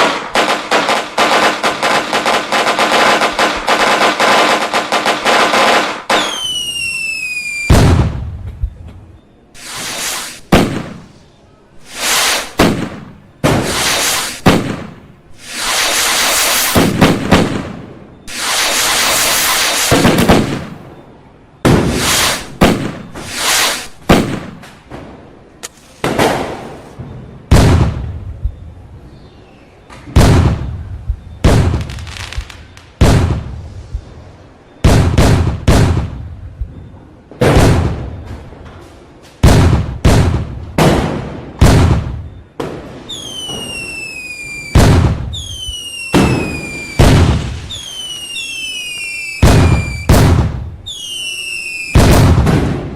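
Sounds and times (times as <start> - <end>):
fireworks bangs: 0.0 - 9.0, 9.6 - 21.0, 21.6 - 25.2, 25.8 - 28.6, 30.0 - 34.2, 34.8 - 38.6, 39.4 - 52.9
whistling fireworks: 0.0 - 24.9, 25.7 - 38.8, 39.4 - 52.9
hissing firework burst: 9.6 - 11.2, 11.8 - 17.6, 18.3 - 20.8, 21.8 - 24.5, 43.1 - 52.6.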